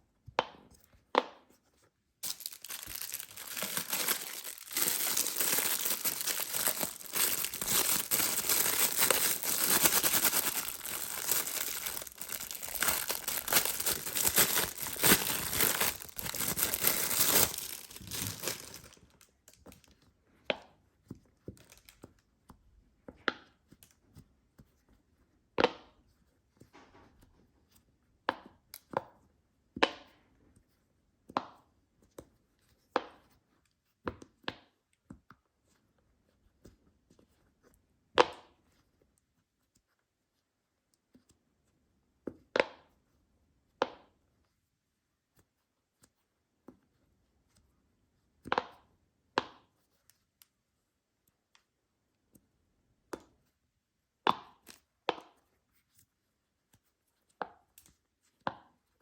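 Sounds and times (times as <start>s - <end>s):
plastic packaging crinkling: 2.2s - 19.3s.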